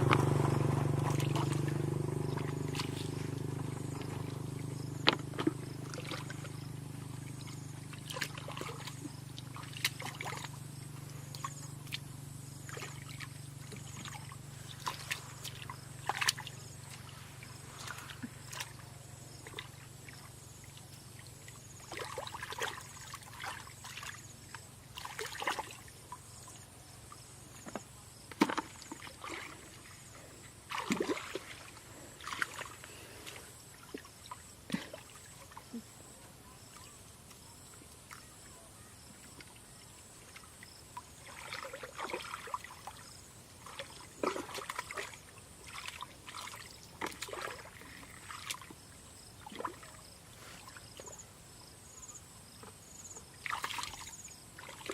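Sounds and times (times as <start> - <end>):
faint low hum: 0.0 - 24.8
water sloshing and splashing: 0.0 - 36.0, 39.0 - 51.3, 52.6 - 54.9.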